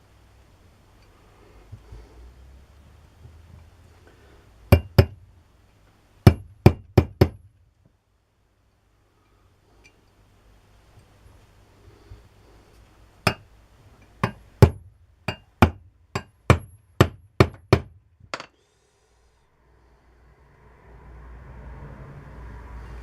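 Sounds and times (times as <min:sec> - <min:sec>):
small hammer tapping: 0:04.7 - 0:05.2, 0:06.3 - 0:07.4, 0:13.3 - 0:13.5, 0:14.2 - 0:18.6.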